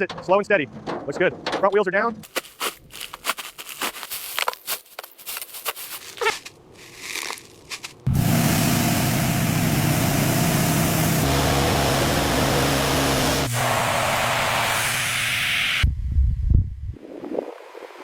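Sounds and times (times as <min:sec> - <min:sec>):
car engine running: 0:08.0 - 0:14.8.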